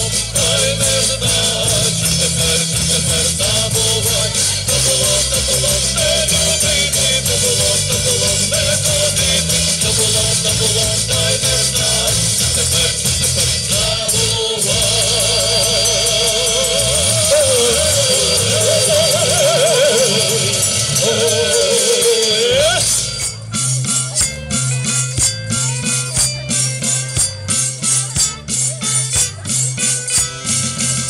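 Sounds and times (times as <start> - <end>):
folk band music: 0.0 - 31.0
vibrato melody: 14.0 - 23.7.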